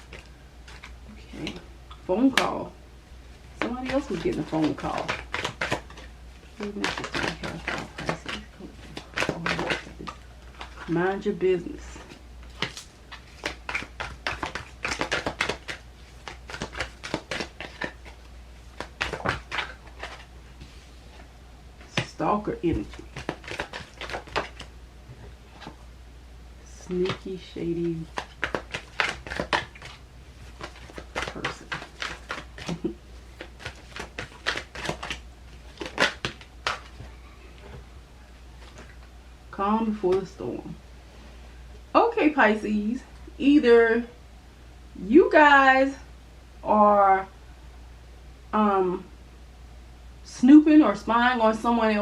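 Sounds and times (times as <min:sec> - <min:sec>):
cards being shuffled: 0:00.0 - 0:01.6, 0:03.4 - 0:11.0, 0:11.7 - 0:24.7, 0:26.9 - 0:37.9, 0:38.6 - 0:39.0
steady low hum: 0:00.0 - 0:52.0.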